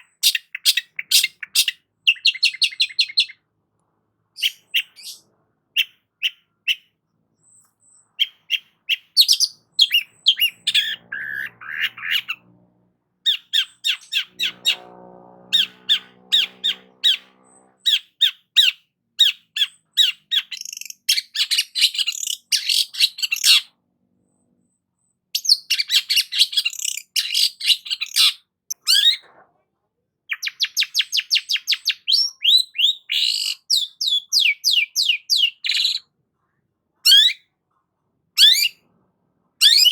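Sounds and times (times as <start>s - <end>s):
bird singing sharp chipping notes: 4.4s - 5.2s, 5.8s - 12.5s, 13.3s - 23.7s.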